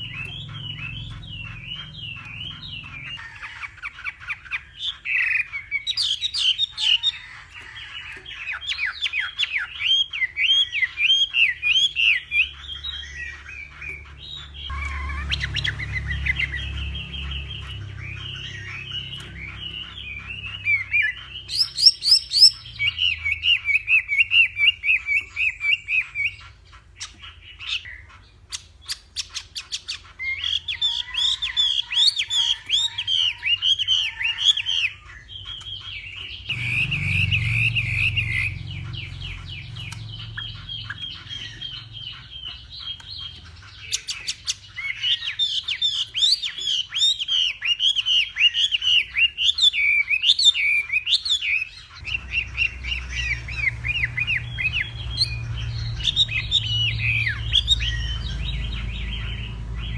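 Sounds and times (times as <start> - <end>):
bird singing: 0.0 - 59.9
bird clicking notes: 3.9 - 26.0, 35.5 - 41.9.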